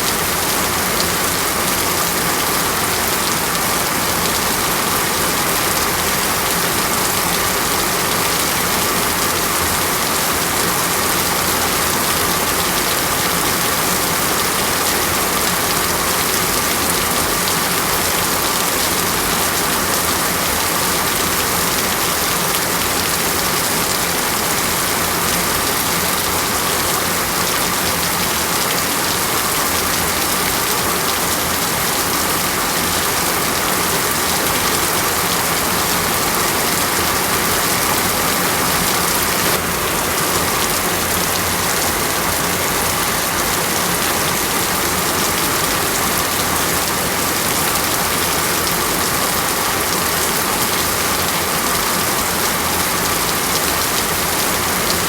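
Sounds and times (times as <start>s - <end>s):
heavy rain on foliage: 0.0s - 55.0s.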